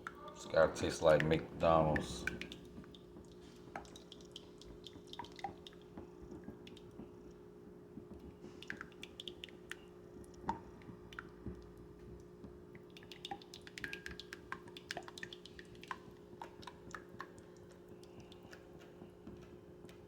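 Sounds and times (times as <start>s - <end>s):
sauce being stirred: 0.0s - 7.4s
steady low hum: 0.0s - 20.0s.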